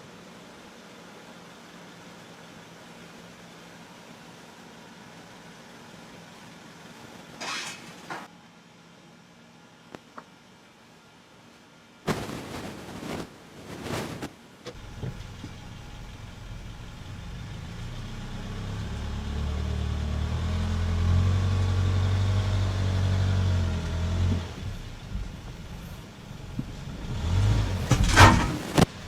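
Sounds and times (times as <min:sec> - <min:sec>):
car engine revving: 0:15.7 - 0:29.0
loud knocks: 0:27.5 - 0:29.0.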